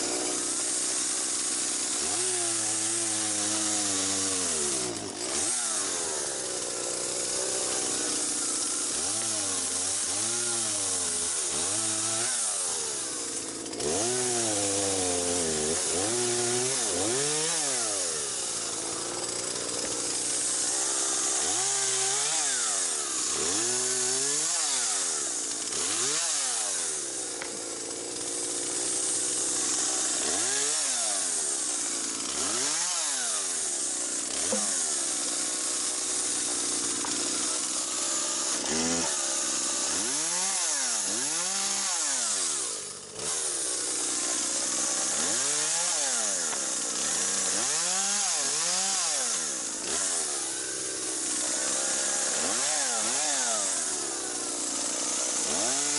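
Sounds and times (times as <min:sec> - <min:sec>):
chainsaw cutting branches: 0:00.0 - 0:55.9.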